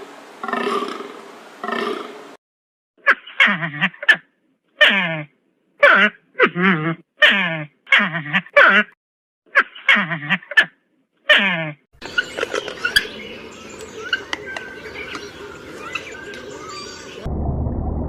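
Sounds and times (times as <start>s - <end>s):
animal making quavering calls: 3.0s - 13.1s.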